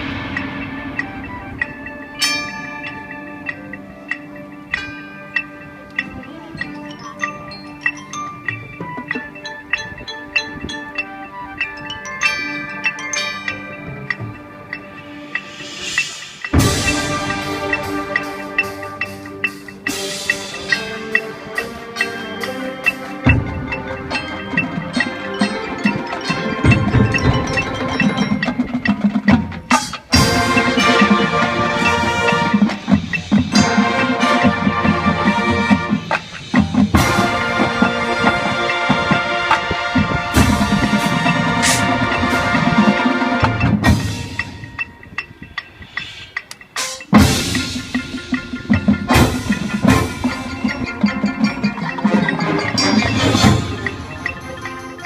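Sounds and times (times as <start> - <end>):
cymbal crashes: 0.0 - 3.2, 15.0 - 19.2
marching band playing: 0.0 - 55.0.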